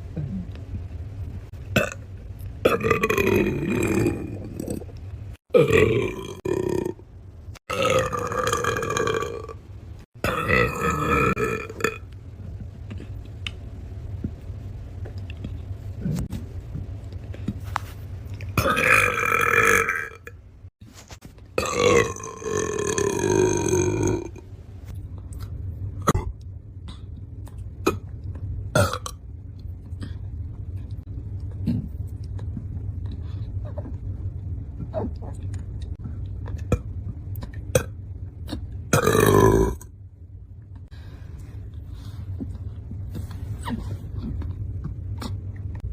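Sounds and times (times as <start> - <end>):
steady low hum: 0.0 - 45.9
person burping loudly: 1.7 - 2.0, 2.6 - 4.8, 5.5 - 7.0, 7.6 - 9.6, 10.2 - 12.1, 18.6 - 20.3, 21.6 - 24.4, 28.8 - 29.2, 38.9 - 39.9.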